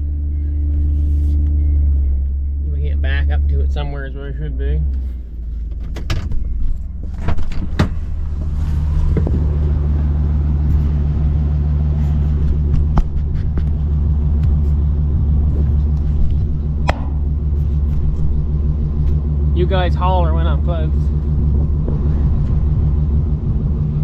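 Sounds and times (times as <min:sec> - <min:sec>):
vehicle engine running: 0:00.0 - 0:24.0
sharp clicks and knocks: 0:15.5 - 0:19.2.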